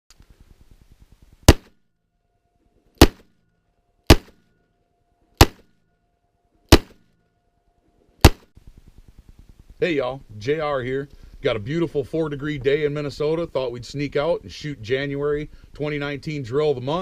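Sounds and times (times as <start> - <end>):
revolver shots with echo: 1.5 - 1.8, 3.0 - 3.3, 5.4 - 5.7, 6.7 - 7.0, 8.2 - 8.5.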